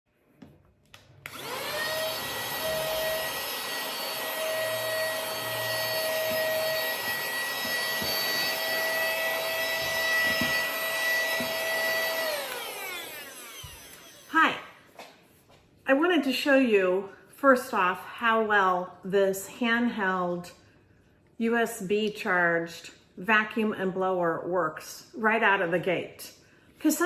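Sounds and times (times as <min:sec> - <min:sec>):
handheld vacuum motor whine: 0:01.2 - 0:14.6.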